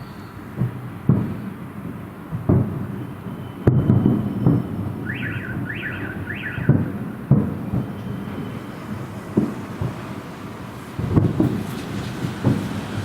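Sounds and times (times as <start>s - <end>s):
fireworks booming: 0.0s - 13.0s
electronic alarm warbling: 5.1s - 7.0s.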